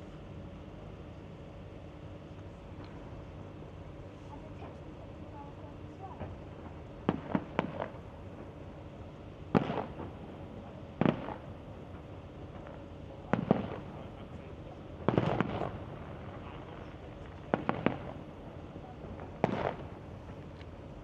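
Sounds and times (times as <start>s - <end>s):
fireworks bangs: 7.1s - 8.5s, 9.5s - 11.6s, 12.4s - 14.3s, 15.0s - 20.5s.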